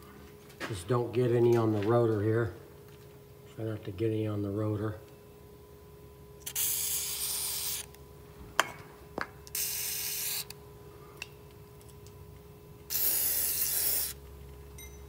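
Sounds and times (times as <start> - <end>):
aerosol can spraying: 6.4 - 7.9, 9.5 - 10.5, 12.9 - 14.2.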